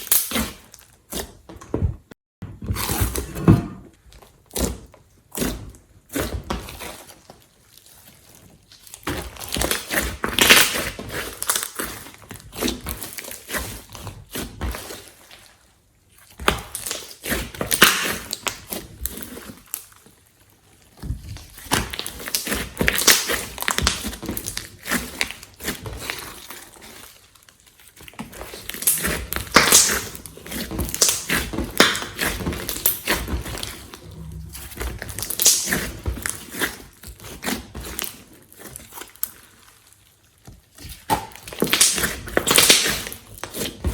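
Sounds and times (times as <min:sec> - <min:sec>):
slime crackling and popping: 0:00.0 - 0:00.6, 0:08.7 - 0:11.9, 0:16.5 - 0:20.0, 0:21.4 - 0:38.2, 0:40.7 - 0:43.8.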